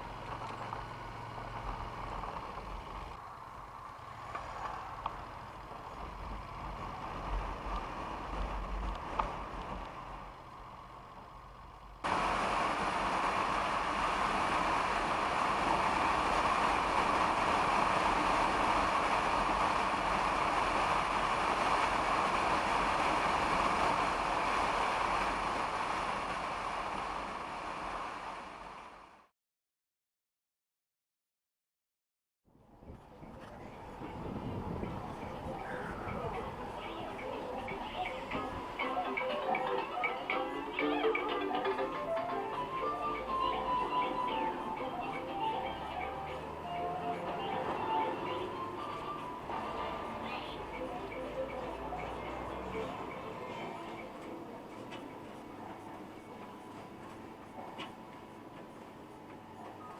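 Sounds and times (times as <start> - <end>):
low hum: 0.0 - 29.3.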